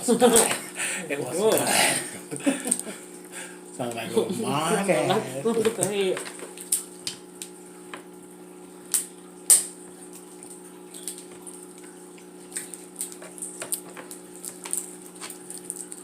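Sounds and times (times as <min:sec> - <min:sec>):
steady low hum: 0:00.0 - 0:16.0
shellfish picked apart and chewed: 0:05.8 - 0:16.0.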